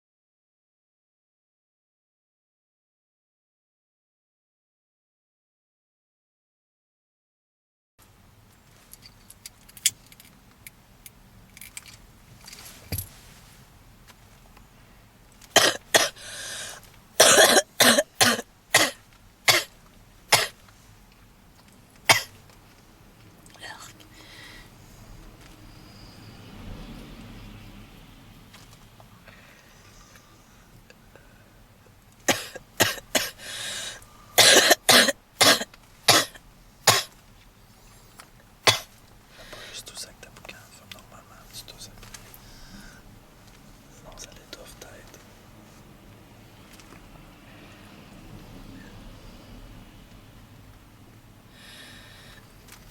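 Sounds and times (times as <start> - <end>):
woman coughing: 15.6 - 16.2, 17.2 - 19.7, 20.3 - 20.6, 22.1 - 22.3, 32.3 - 33.4, 34.4 - 37.1, 38.7 - 38.9
drawn-in breath: 16.2 - 16.8, 24.1 - 26.6, 29.2 - 31.6, 33.4 - 34.4, 39.3 - 39.8, 42.3 - 43.1, 51.5 - 52.5
wheezing breath in: 16.2 - 16.8, 24.1 - 24.8, 33.4 - 34.4, 42.4 - 43.1, 51.5 - 52.5.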